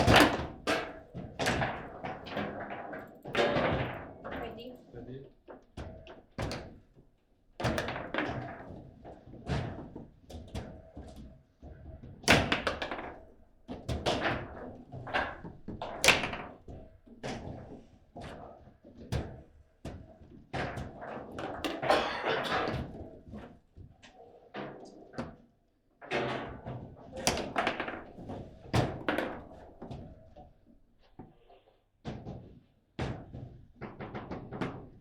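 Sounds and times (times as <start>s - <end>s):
foosball ball knocks and bangs: 0.0s - 4.3s, 7.6s - 8.8s, 12.2s - 17.7s, 20.6s - 23.2s, 26.0s - 30.1s, 33.0s - 35.0s.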